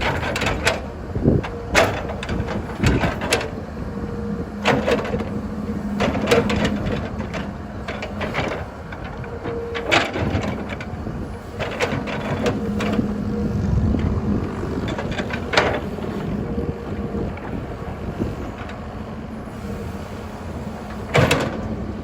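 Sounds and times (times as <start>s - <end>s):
metal clanks and knocks: 0.0s - 3.6s, 4.6s - 13.1s, 14.8s - 16.0s, 21.0s - 21.7s
diesel engine running: 0.0s - 22.0s.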